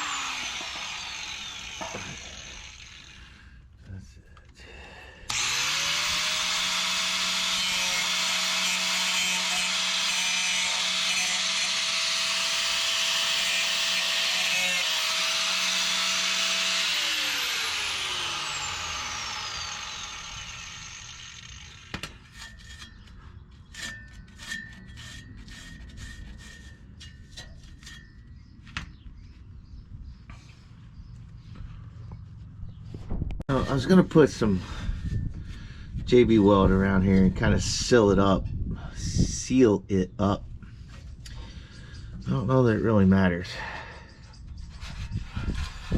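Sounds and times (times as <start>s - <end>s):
angle grinder grinding metal: 0.0s - 3.3s, 5.3s - 28.2s.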